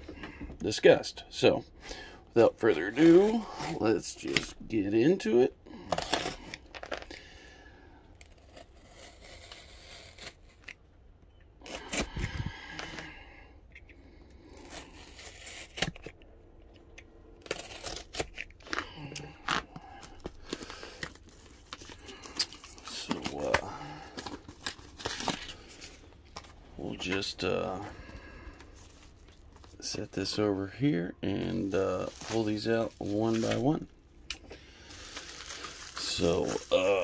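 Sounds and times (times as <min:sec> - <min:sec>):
packaging tearing and crinkling: 0:08.2 - 0:10.8, 0:14.5 - 0:16.2, 0:17.3 - 0:26.5, 0:31.6 - 0:33.8, 0:34.8 - 0:37.0.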